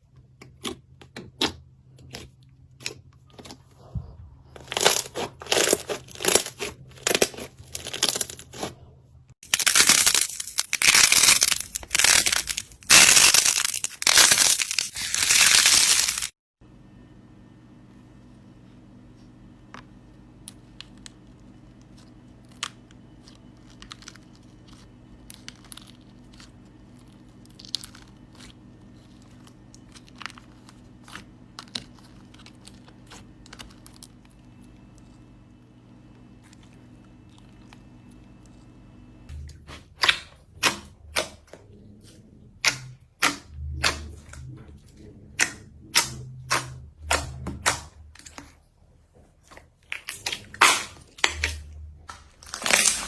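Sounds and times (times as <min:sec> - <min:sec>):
steady low hum: 0:16.6 - 0:53.0.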